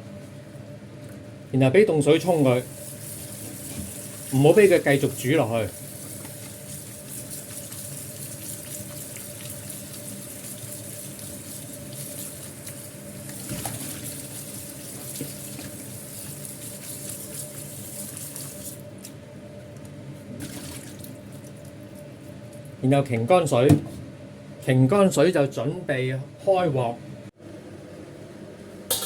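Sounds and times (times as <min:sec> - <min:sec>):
tap water running: 0:02.2 - 0:18.9, 0:20.4 - 0:21.7.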